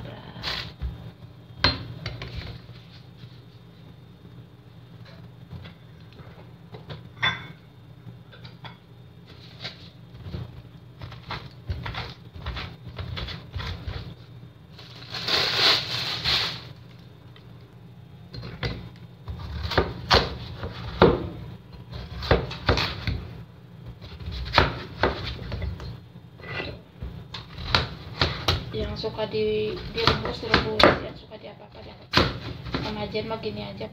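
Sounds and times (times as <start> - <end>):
cookware and utensils clattering: 7.1 - 7.6.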